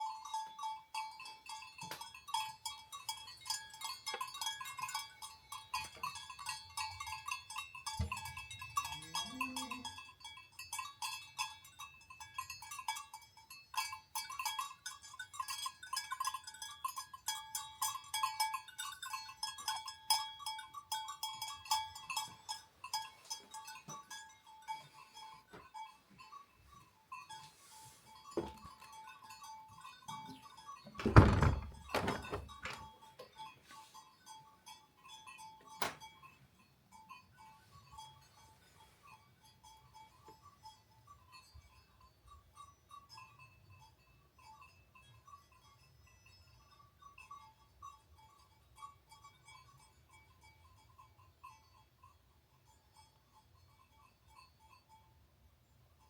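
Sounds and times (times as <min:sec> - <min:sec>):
sheep bells clanking: 0:00.0 - 0:56.0
sheep bleating: 0:08.9 - 0:10.0.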